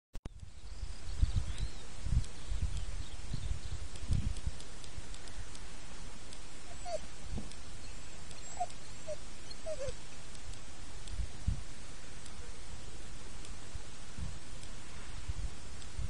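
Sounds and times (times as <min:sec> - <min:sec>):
steady outdoor hiss: 0:00.3 - 0:16.0
faint clicks: 0:01.3 - 0:11.2, 0:13.0 - 0:15.0
short animal calls: 0:06.6 - 0:07.1, 0:08.4 - 0:10.0.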